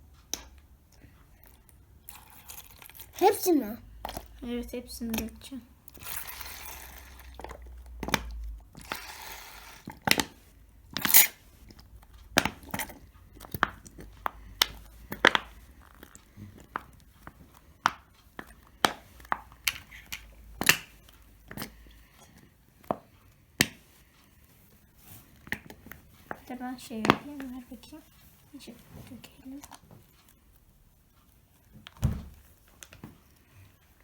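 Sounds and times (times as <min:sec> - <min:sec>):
plastic bottle clicks and crackles: 0:07.3 - 0:09.0.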